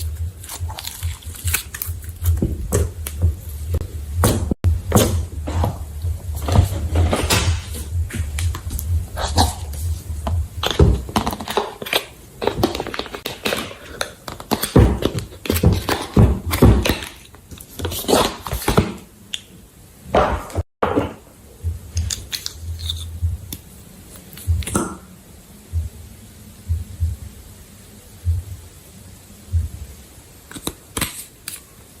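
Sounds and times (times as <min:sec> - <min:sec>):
slime squelching by hand: 0:00.0 - 0:05.6
dull thumps: 0:00.0 - 0:11.7.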